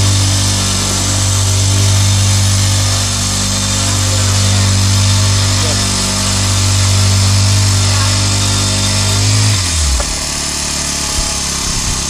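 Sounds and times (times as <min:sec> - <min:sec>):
small petrol engine winding down: 0:00.0 - 0:12.0.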